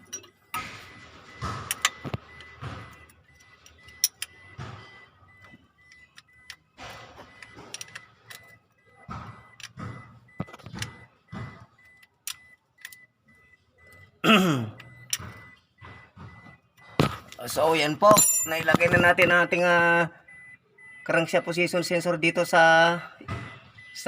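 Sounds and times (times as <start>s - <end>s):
metal tools clinking and scraping: 0.0s - 0.7s, 17.8s - 19.4s.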